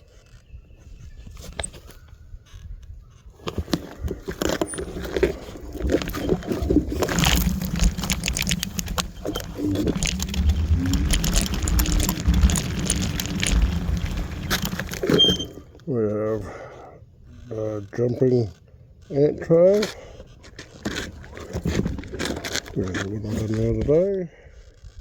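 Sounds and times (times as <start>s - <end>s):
electric scooter rattling on dirt: 1.3s - 24.1s.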